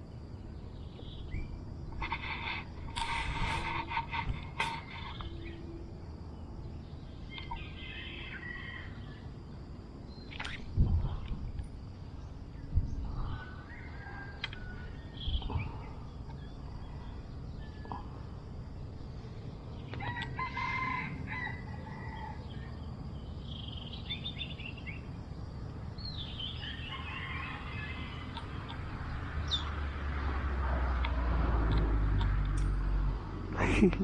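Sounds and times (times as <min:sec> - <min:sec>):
small birds chirping: 0:00.0 - 0:20.5, 0:21.8 - 0:32.8
rooster crowing: 0:07.8 - 0:09.2, 0:13.3 - 0:15.1, 0:19.9 - 0:22.8, 0:26.5 - 0:28.6.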